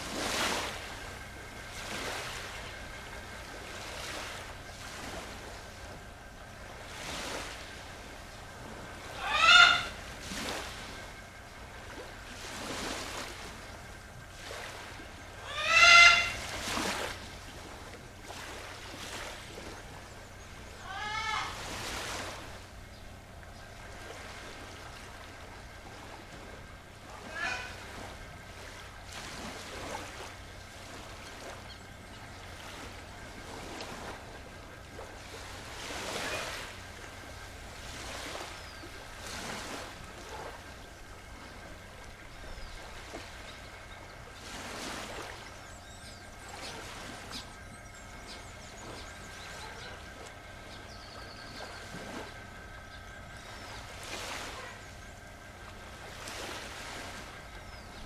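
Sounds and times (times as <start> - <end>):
waves washing: 0.0 - 58.0
bird calling loudly: 8.2 - 10.2, 15.1 - 17.2, 20.0 - 23.8, 27.1 - 28.3, 45.4 - 55.7.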